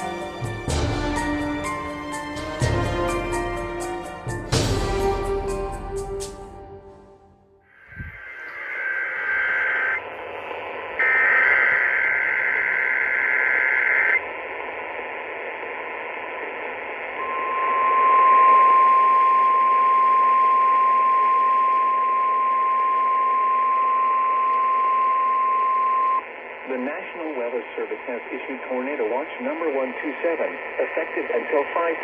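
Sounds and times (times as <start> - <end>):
radio static: 7.8 - 32.0
warbling digital data bursts: 7.9 - 10.0
single-pitch warning alarm tone: 17.2 - 26.2.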